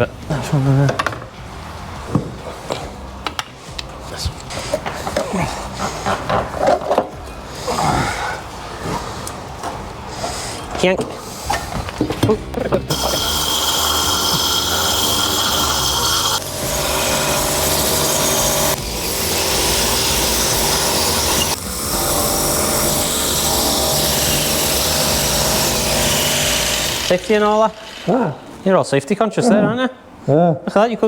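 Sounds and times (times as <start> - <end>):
power tool scouring rust: 12.8 - 28.6.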